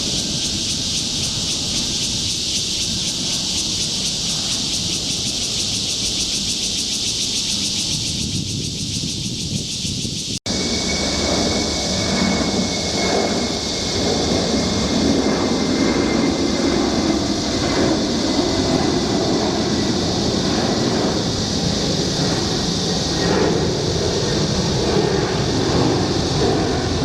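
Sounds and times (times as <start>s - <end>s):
jet engines roaring: 0.0s - 27.0s
faint high engine whine: 10.4s - 27.0s.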